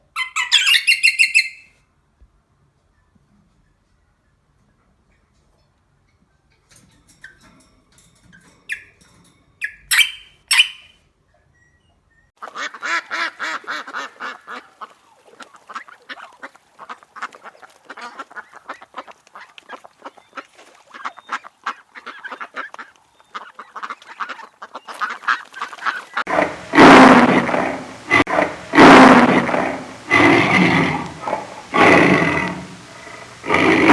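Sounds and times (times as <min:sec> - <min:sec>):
flock of birds chattering: 0:00.0 - 0:01.7, 0:08.6 - 0:10.9, 0:12.4 - 0:26.3
loud animal call: 0:00.0 - 0:01.7, 0:09.6 - 0:10.9.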